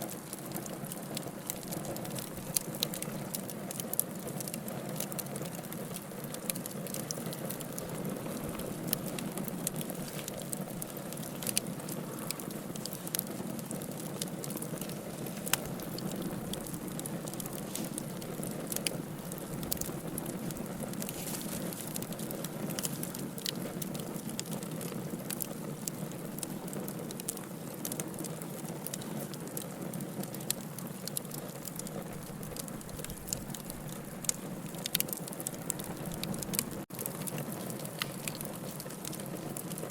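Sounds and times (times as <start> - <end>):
fire crackling and popping: 0.0 - 39.9
flame rushing: 5.9 - 26.8.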